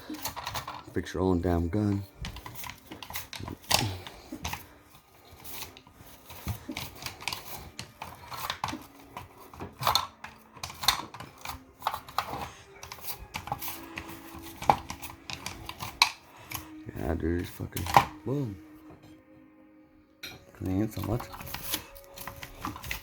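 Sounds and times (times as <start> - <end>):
clicks taps and scraping: 0.0 - 18.2.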